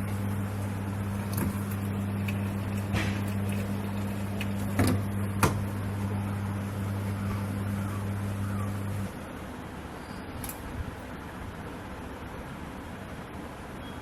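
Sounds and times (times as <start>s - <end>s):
low hum: 0.0s - 9.2s.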